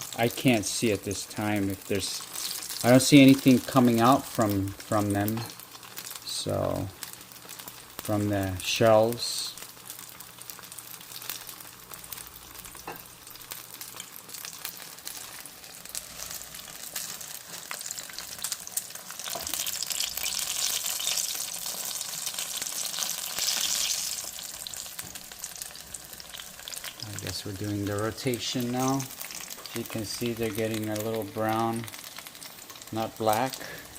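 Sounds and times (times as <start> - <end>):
food sizzling in hot oil: 0.0 - 33.9.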